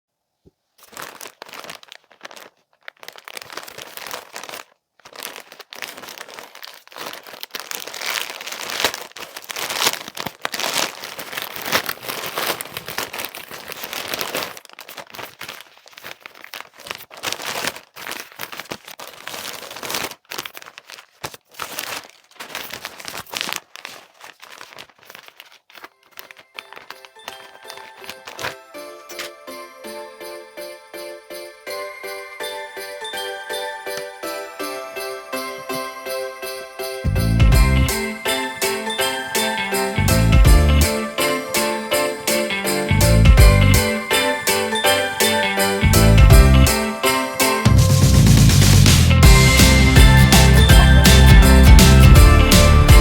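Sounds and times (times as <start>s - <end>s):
packaging crinkling and tearing: 0.6s - 29.5s.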